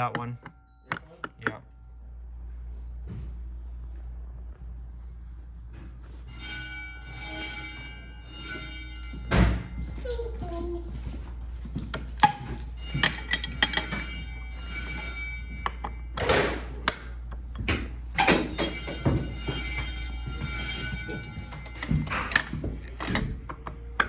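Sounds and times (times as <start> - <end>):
fire alarm bells ringing: 6.1 - 23.5.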